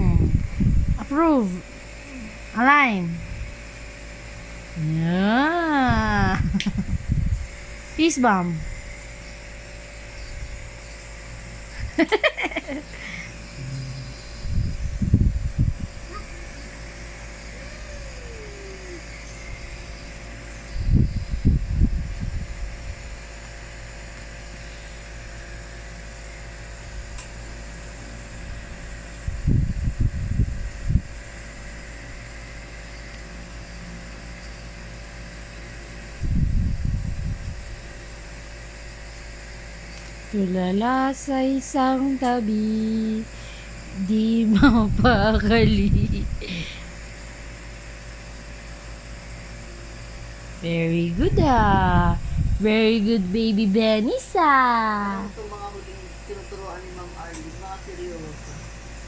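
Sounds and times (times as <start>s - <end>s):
nebulizer compressor humming: 0.0s - 59.0s
child making voiced sounds: 17.5s - 19.1s, 54.0s - 55.3s.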